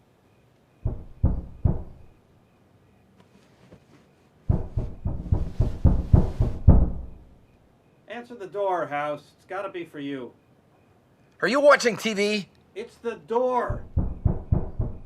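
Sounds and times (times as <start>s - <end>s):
knocking on a door: 0.8s - 2.0s, 4.5s - 7.2s, 13.7s - 15.0s.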